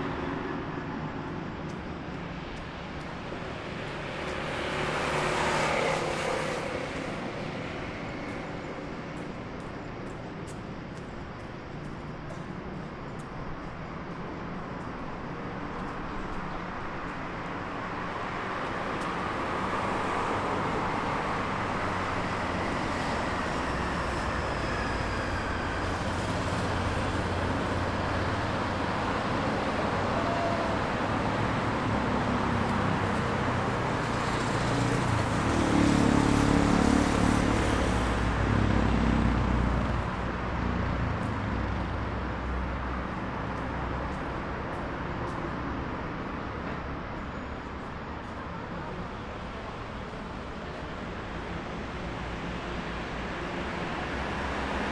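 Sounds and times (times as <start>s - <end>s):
traffic roar: 0.0s - 54.9s
vehicle engine hum passing: 1.0s - 10.2s, 19.7s - 45.3s.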